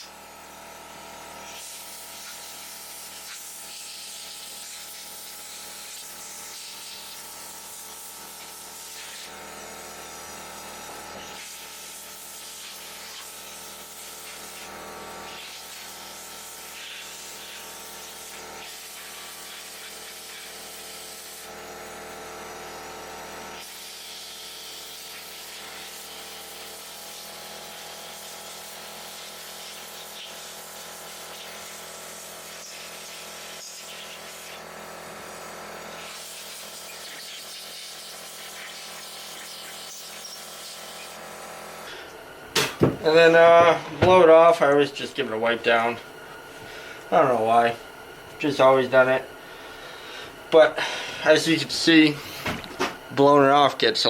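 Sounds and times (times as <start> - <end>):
compressed air blow gun hissing: 1.4 - 21.5, 23.6 - 47.7, 49.4 - 53.0
steady hum: 41.8 - 54.0.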